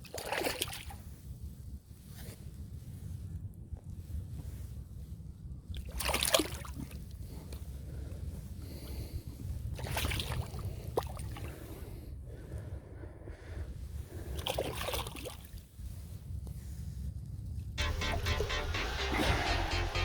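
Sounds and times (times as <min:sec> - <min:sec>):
water sloshing and splashing: 0:00.0 - 0:01.0
low rumble: 0:17.8 - 0:20.0.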